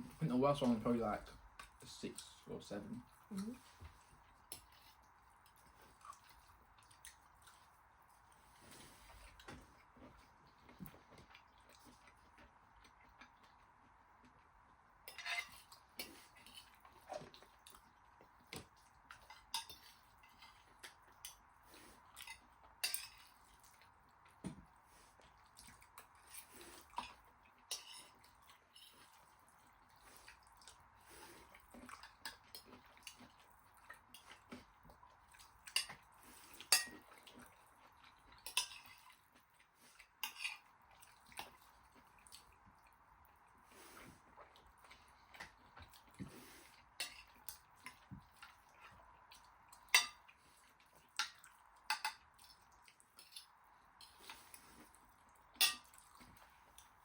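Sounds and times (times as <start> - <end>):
cutlery clinking on plates: 15.1 - 16.7, 19.2 - 20.5, 22.2 - 23.3, 36.6 - 37.1, 38.5 - 39.1, 49.9 - 50.3, 51.2 - 52.2, 55.6 - 56.0.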